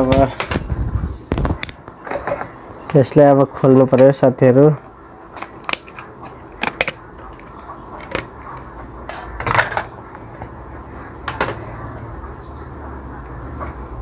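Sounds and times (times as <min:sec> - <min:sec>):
clicks of hand tools and phone parts: 0:05.4 - 0:08.3.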